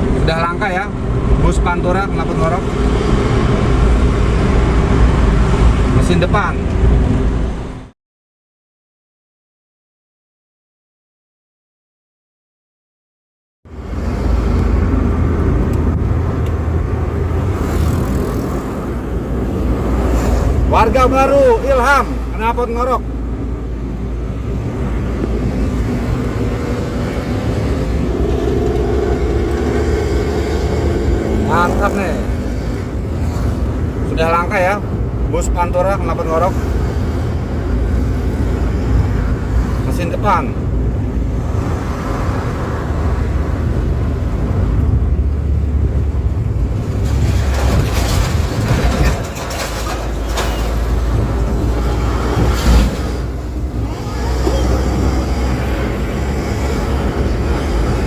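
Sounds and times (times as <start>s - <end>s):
bus engine rumbling growl: 23.0s - 35.3s, 40.6s - 58.0s.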